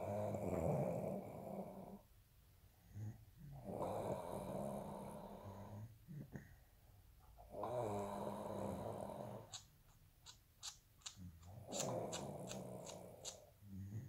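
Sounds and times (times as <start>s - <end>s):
rattling snore breaths: 7.5s - 9.7s, 10.6s - 14.0s
short clicks: 9.5s - 13.4s.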